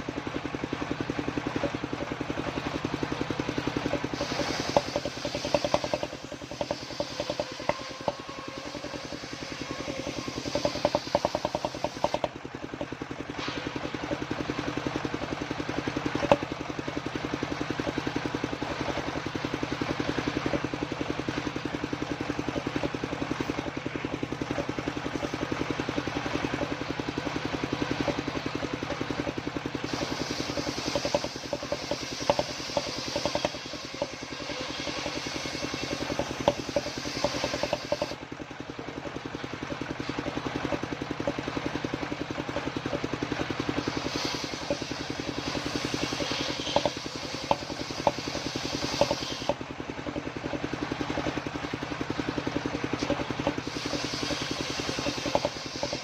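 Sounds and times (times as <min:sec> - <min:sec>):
engine pulsing: 0:00.0 - 0:56.0
saw blade cutting timber: 0:01.4 - 0:14.9, 0:15.6 - 0:16.6, 0:17.4 - 0:38.2, 0:39.8 - 0:51.4, 0:52.9 - 0:56.0.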